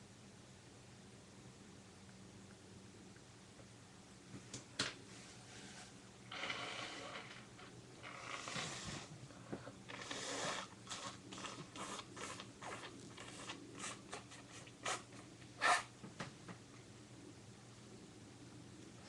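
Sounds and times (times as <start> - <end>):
person blowing nose: 8.0 - 9.1, 9.9 - 12.4.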